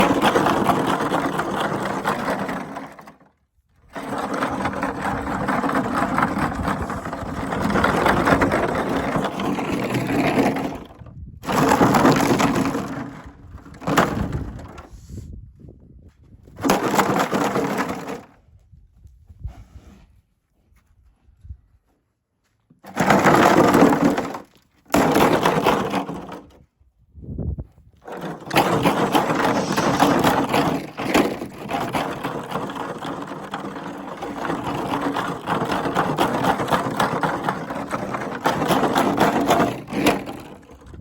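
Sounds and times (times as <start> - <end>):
horse snorting: 28.6 - 31.4.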